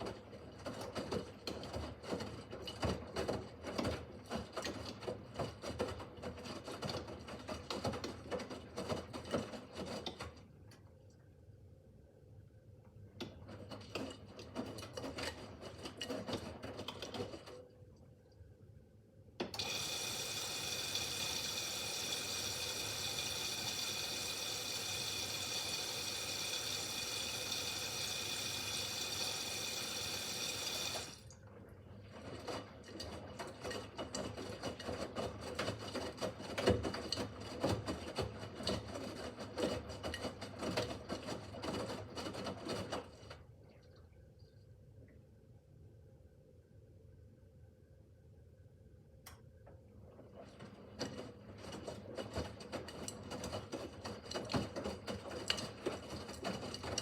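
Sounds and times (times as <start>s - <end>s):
washing machine inlet valve hissing: 19.6s - 31.2s.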